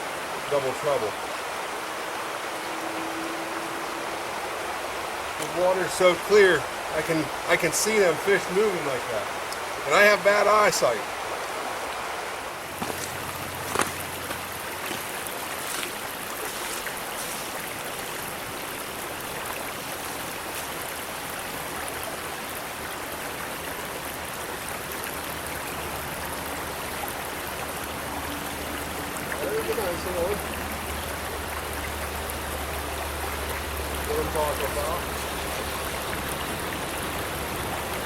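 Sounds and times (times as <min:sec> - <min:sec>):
stream water flowing: 0:00.0 - 0:38.0
small knocks: 0:12.7 - 0:15.0.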